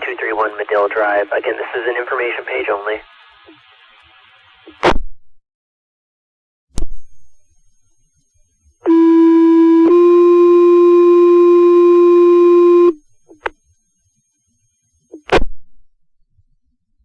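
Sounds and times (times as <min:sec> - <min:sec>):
two-tone paging tones: 0:08.9 - 0:13.0.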